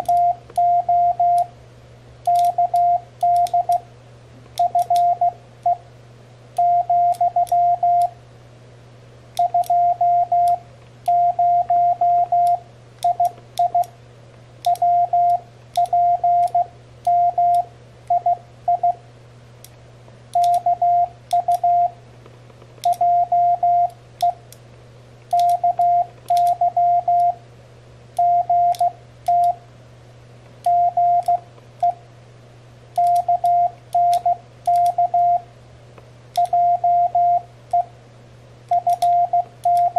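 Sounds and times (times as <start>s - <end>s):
morse code beeps: 0.0s - 1.5s, 2.3s - 3.8s, 4.6s - 5.8s, 6.6s - 8.1s, 9.4s - 13.9s, 14.7s - 19.0s, 20.4s - 22.0s, 22.9s - 24.4s, 25.3s - 27.4s, 28.2s - 29.6s, 30.7s - 32.0s, 33.0s - 35.4s, 36.4s - 37.9s, 38.7s - 39.9s
microswitch clicks: 2.2s - 3.9s, 4.5s - 5.3s, 9.4s - 14.0s, 14.6s - 18.3s, 19.6s - 21.7s, 22.6s - 23.1s, 23.8s - 27.4s, 28.1s - 29.6s, 33.0s - 35.2s, 36.3s - 36.7s, 38.7s - 39.9s.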